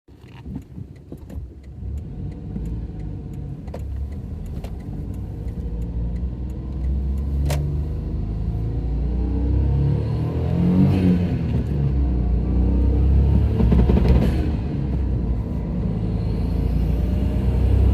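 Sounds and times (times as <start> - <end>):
light ticks: 0.2 - 7.7
car engine accelerating: 1.6 - 17.9.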